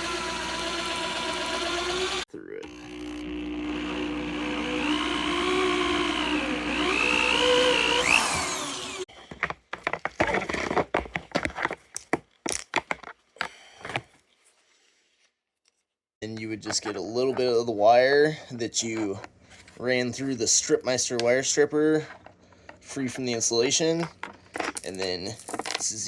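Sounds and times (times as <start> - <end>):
drill motor whirring: 0.0 - 9.1.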